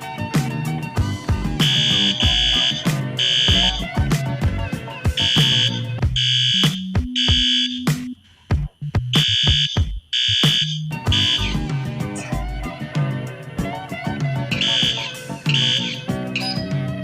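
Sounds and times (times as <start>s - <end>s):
electronic music with drum machine: 0.0s - 17.0s
alarm horn beeps: 1.6s - 4.0s, 5.2s - 8.2s, 9.2s - 11.6s, 14.5s - 16.6s.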